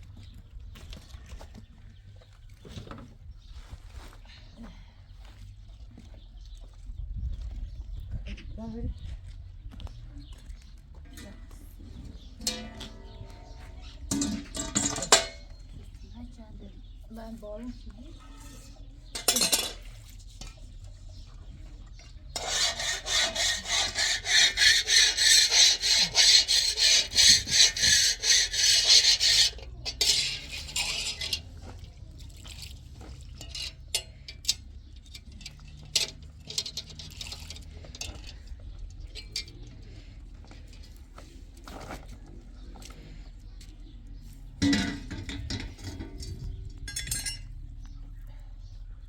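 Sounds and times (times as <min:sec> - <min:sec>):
fast scraping strokes: 0:22.4 - 0:31.4
utensil clink: 0:44.6 - 0:47.6.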